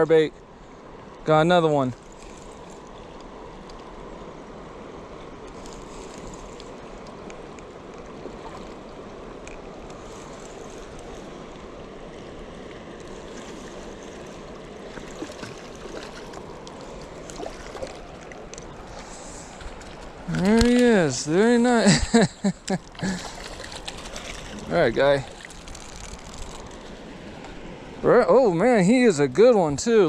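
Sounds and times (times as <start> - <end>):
lake water lapping at shore: 0.6 - 29.5
faint ticks: 1.9 - 3.9, 5.4 - 8.8.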